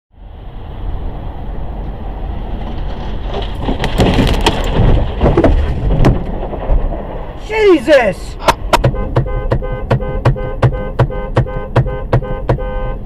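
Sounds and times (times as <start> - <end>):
vehicle rumbling on road: 0.1 - 13.0
vehicle collision cracks and crunches: 2.4 - 12.7.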